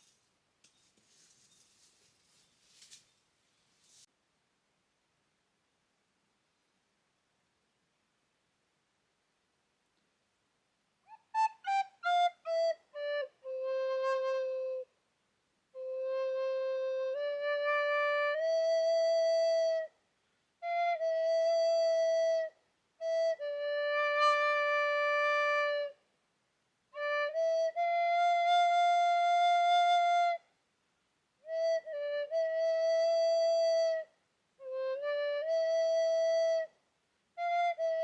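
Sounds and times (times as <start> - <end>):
solo wind instrument: 11.0 - 15.0, 15.7 - 26.1, 26.9 - 30.6, 31.4 - 38.0.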